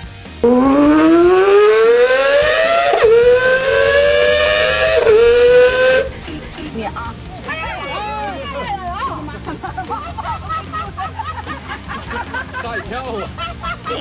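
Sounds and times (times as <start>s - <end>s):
engine revving and shifting gear: 0.3s - 6.6s.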